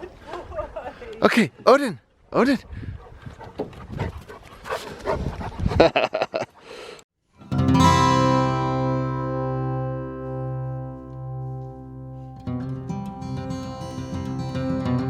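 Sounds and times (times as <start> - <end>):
acoustic guitar music: 7.4 - 15.0.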